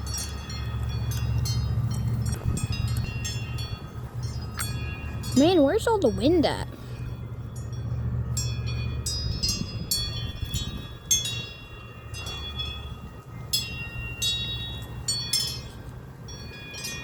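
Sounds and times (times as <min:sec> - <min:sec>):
wind chimes ringing: 0:00.0 - 0:17.0
wind rumble on microphone: 0:00.0 - 0:17.0.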